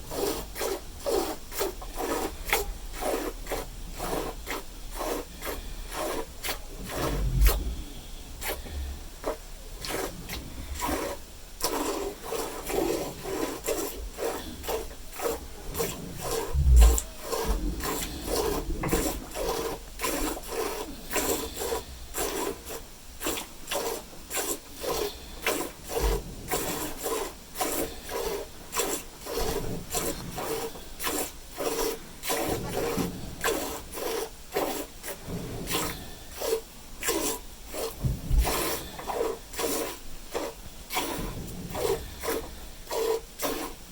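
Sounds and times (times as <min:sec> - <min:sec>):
milk squirting into pail: 0:00.0 - 0:43.8
dull thump: 0:38.0 - 0:38.6.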